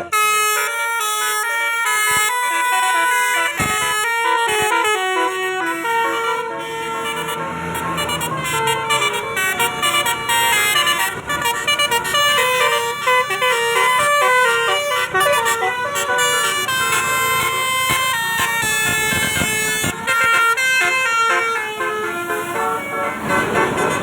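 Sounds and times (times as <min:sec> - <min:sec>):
bus horns playing melodic notes: 0:00.0 - 0:24.0.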